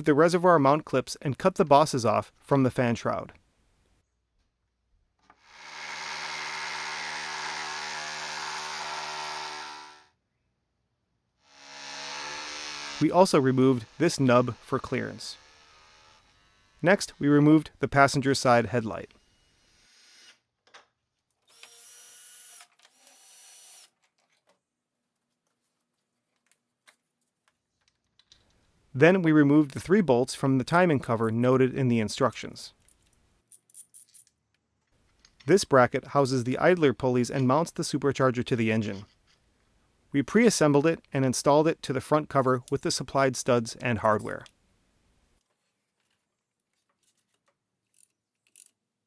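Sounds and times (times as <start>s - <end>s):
power tool cutting plastic: 5.4s - 10.1s, 11.4s - 16.8s, 21.4s - 24.0s.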